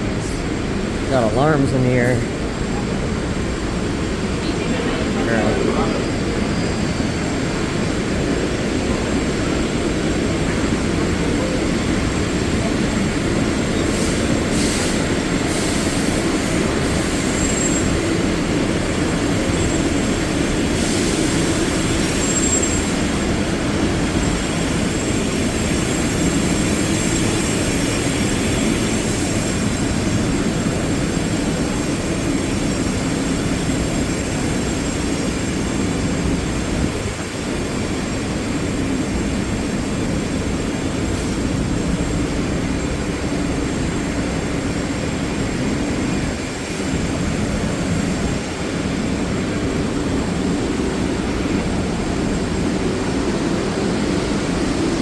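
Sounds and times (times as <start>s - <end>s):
steady loud rumbling: 0.0s - 55.0s
short high-pitched squeals: 21.0s - 23.4s.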